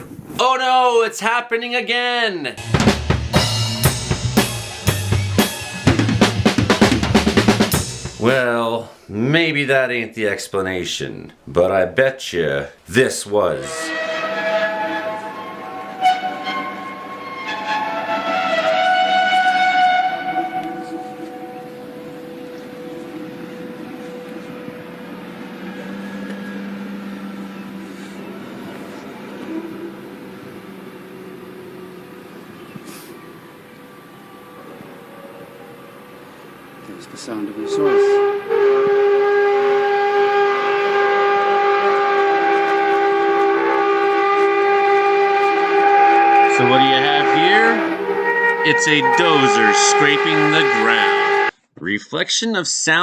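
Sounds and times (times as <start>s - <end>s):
eerie drawn-out tones: 2.6s - 8.6s, 13.6s - 51.5s.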